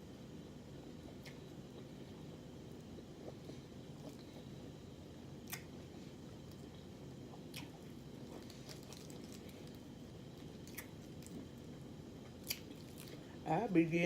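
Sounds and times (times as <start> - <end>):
low steady hum: 0.0 - 14.0
mouth clicks and smacks: 5.4 - 5.7
wet chewing: 5.4 - 11.6, 12.2 - 13.3.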